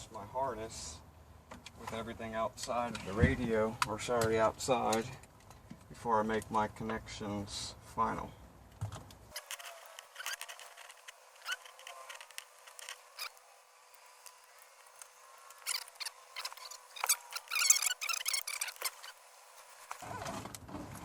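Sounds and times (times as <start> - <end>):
crackling rustle: 9.3 - 21.0.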